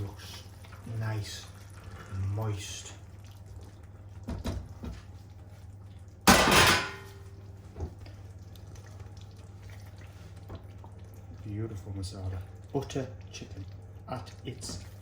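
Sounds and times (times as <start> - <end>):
loud utensil clatter: 6.3 - 7.1.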